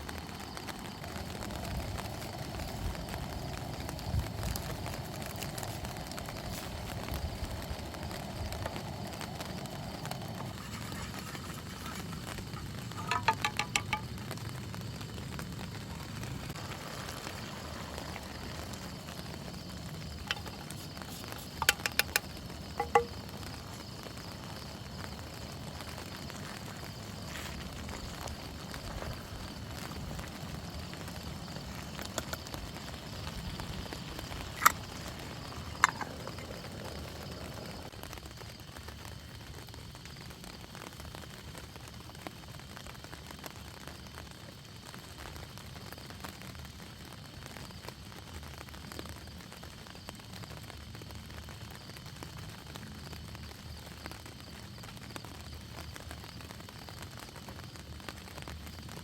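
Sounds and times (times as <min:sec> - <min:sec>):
campfire crackling: 0:00.0 - 0:59.0
rain: 0:00.0 - 0:59.0.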